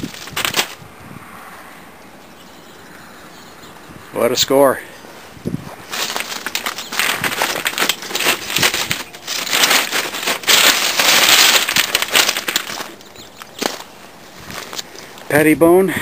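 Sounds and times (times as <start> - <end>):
footsteps on gravel: 0.0 - 0.8, 5.0 - 15.5.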